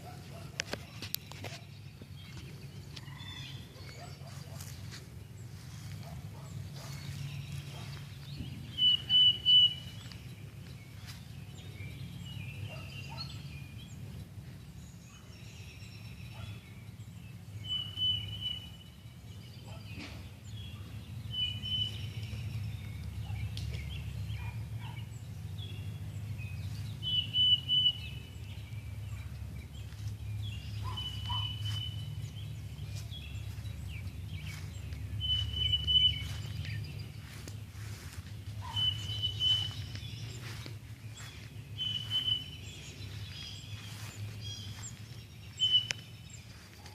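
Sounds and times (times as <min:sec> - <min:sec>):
bird calling: 0:00.0 - 0:12.0, 0:25.9 - 0:46.9
steady low rumble: 0:00.0 - 0:46.9.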